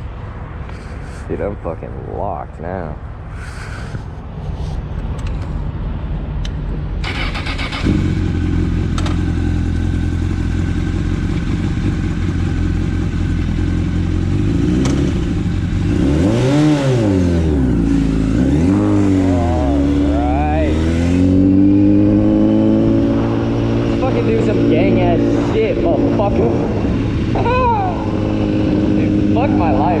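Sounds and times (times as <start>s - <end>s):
motorcycle engine revving: 7.0s - 30.0s.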